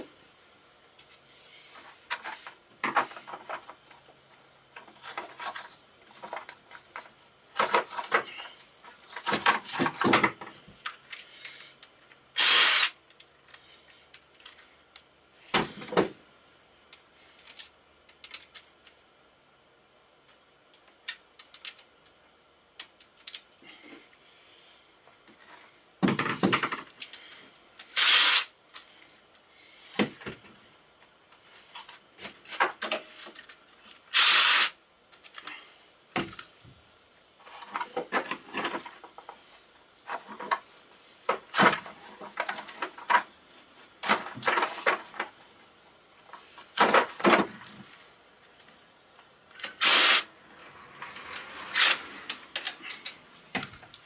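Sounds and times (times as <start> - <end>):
rasping bursts: 12.4 - 13.0, 28.0 - 28.5, 34.1 - 34.8, 49.8 - 50.3, 51.5 - 52.4.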